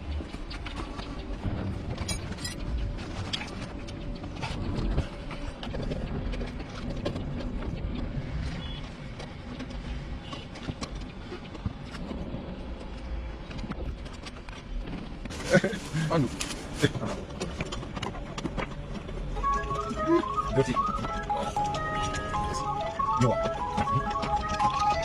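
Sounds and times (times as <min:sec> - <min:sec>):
low rumbling background: 0:00.0 - 0:10.2.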